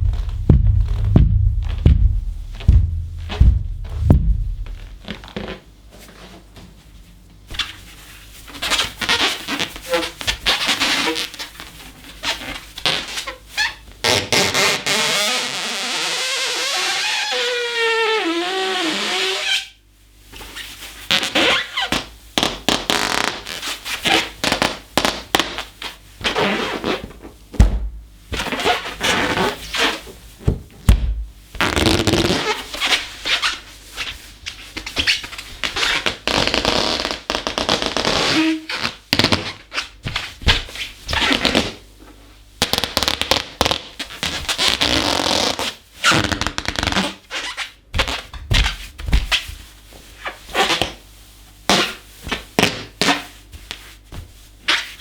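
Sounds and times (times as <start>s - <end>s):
dull thumps: 0.0s - 5.6s, 27.0s - 28.6s, 29.4s - 31.4s
balloon squeaking: 2.5s - 5.7s, 8.6s - 19.8s, 21.1s - 27.8s, 28.4s - 30.5s, 31.6s - 33.7s, 34.8s - 41.8s, 42.6s - 49.4s, 50.2s - 51.0s.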